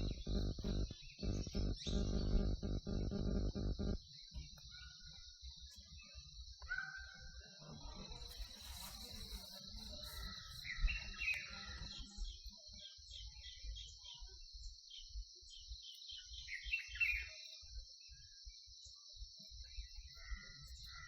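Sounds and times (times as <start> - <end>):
low rumbling: 0.0 - 4.0
crickets trilling: 0.0 - 4.8, 8.0 - 12.4.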